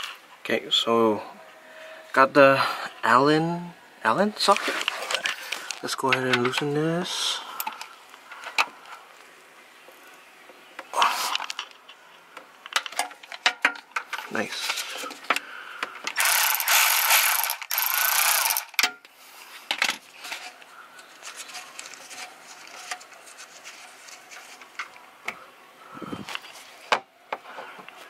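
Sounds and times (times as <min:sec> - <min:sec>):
ratchet wrench clicking rapidly: 0:16.2 - 0:18.8.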